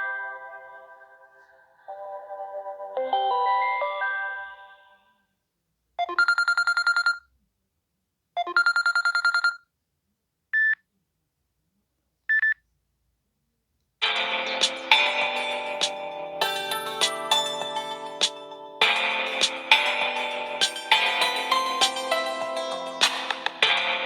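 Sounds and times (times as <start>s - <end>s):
melodic phone ringtone: 0.0s - 5.0s, 6.0s - 7.2s, 14.0s - 24.0s.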